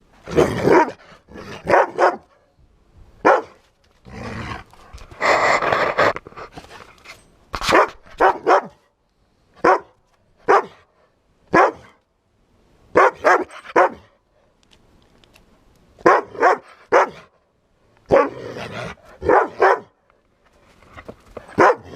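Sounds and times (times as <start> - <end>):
dog barking: 1.6 - 2.4, 3.2 - 3.6, 7.7 - 8.8, 9.6 - 10.8, 11.5 - 12.0, 13.0 - 14.1, 16.0 - 17.3, 18.1 - 18.4, 19.2 - 20.0, 21.5 - 21.9.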